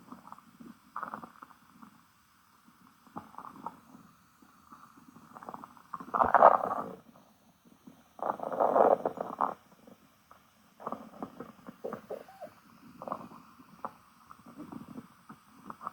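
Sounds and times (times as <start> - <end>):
stomach growling: 0.0 - 2.0, 3.0 - 4.0, 4.7 - 7.2, 7.9 - 10.0, 10.8 - 15.9.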